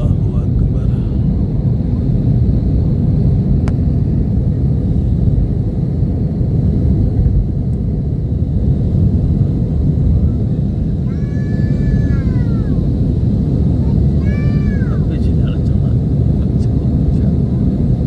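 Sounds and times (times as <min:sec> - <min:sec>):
loud low rumble: 0:00.0 - 0:18.0
falling meow-like call: 0:11.0 - 0:12.8.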